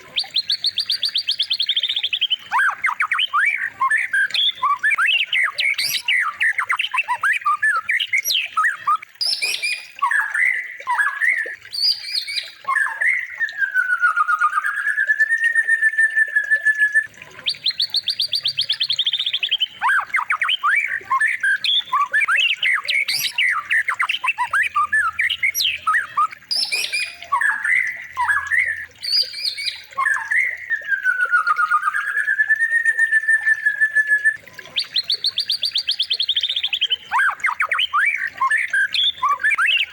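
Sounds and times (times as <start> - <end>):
songbird chirps and squawks: 0.0 - 39.9
buzzy bird trill: 2.5 - 15.1, 17.5 - 32.4.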